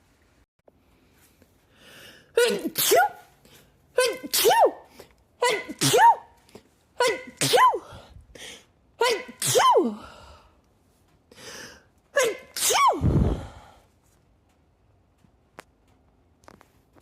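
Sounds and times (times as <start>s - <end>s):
woman sneezing: 2.4s - 3.3s, 4.0s - 6.3s, 7.0s - 8.0s, 9.0s - 10.2s, 12.2s - 13.4s.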